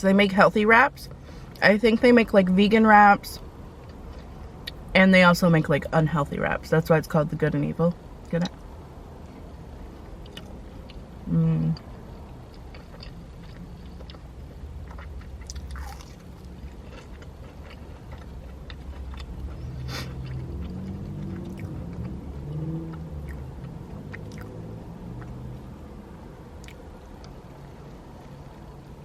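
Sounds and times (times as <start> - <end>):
person chewing food: 3.8 - 4.8, 9.2 - 11.1, 11.8 - 24.6, 26.6 - 27.4.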